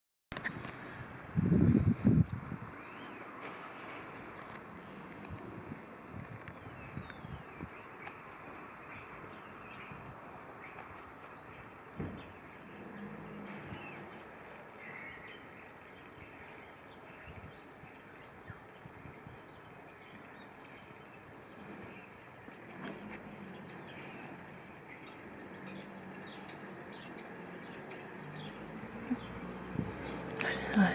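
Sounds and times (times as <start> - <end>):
bird chirps and calls: 6.5 - 30.9
low thump: 12.0 - 12.4.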